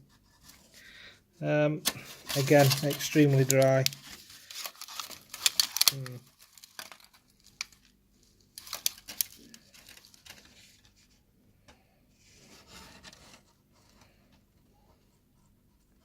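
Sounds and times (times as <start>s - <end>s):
dry moss packet crackling: 1.8s - 10.9s
packaging rustle: 1.9s - 11.0s.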